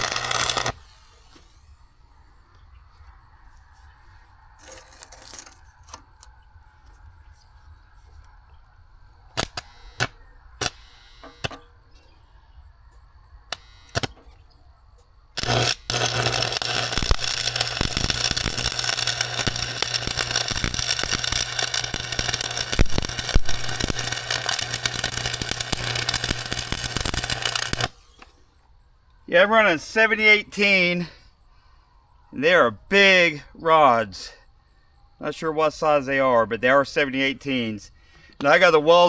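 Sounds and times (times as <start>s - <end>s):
welding arc crackling: 0.0s - 1.8s, 4.6s - 5.6s, 9.4s - 11.6s, 13.5s - 14.2s, 15.4s - 28.3s
steady hum: 15.3s - 28.2s.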